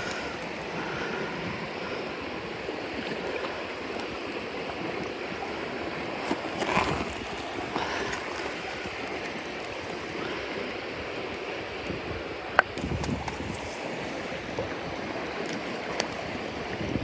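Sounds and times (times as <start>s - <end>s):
campfire crackles: 0.0s - 17.0s
stream babbling: 0.0s - 17.0s.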